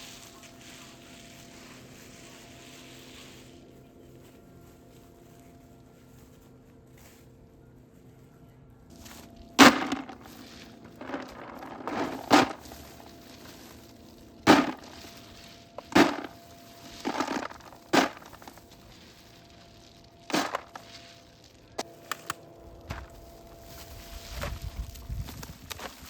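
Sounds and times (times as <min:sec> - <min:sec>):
knocks and cracks: 0:09.6 - 0:13.7, 0:14.4 - 0:15.2, 0:15.8 - 0:21.1.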